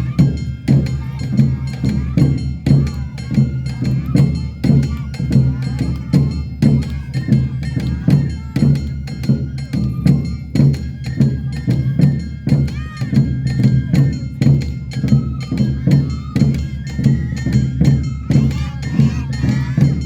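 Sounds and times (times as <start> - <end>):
taiko drums: 0.0 - 20.0
high melody line: 18.2 - 20.0.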